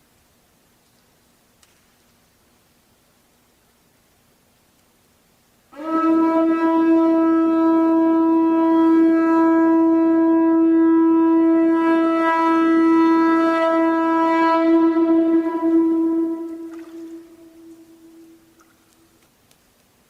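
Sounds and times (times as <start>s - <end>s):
conch shell trumpet note: 5.7s - 18.7s.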